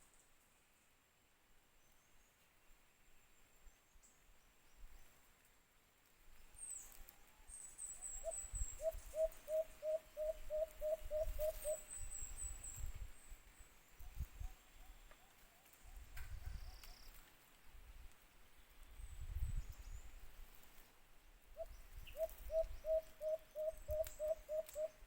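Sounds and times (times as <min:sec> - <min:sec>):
dove hooting: 0:08.2 - 0:11.9, 0:21.6 - 0:25.0.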